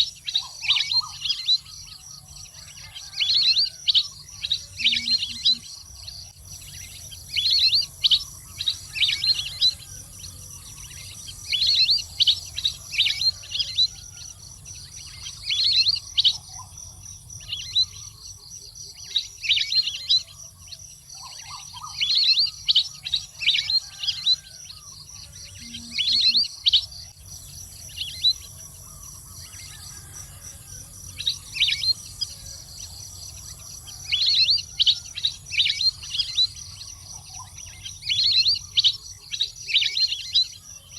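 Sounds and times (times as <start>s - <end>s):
thin high-pitched hum: 25.3s - 26.5s.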